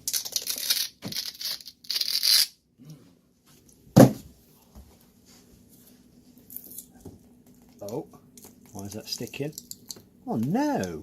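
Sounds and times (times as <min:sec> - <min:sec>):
plastic film ripping: 0:00.0 - 0:02.5.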